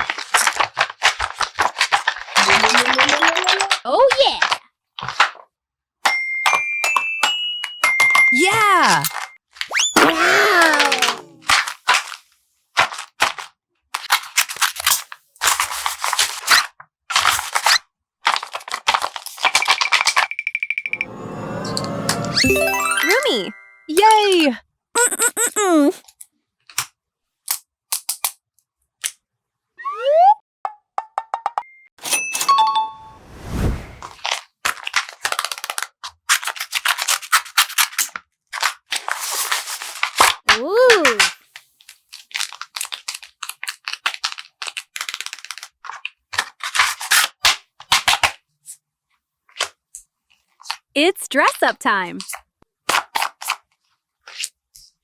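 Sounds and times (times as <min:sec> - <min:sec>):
paper crinkling: 0:00.0 - 0:03.8, 0:41.8 - 0:46.8
steady high tone: 0:20.9 - 0:24.1, 0:32.5 - 0:34.0.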